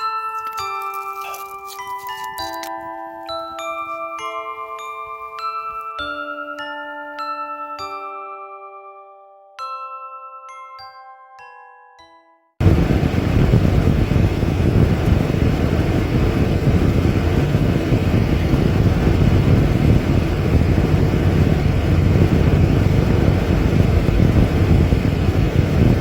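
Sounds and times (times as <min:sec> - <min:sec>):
loud low rumbling: 0:12.6 - 0:26.0.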